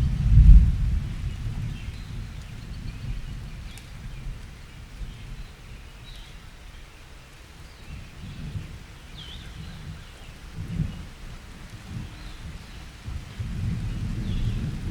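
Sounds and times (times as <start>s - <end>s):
thunder rumble: 0.0s - 5.5s, 9.4s - 14.9s
steady rain: 0.0s - 14.9s.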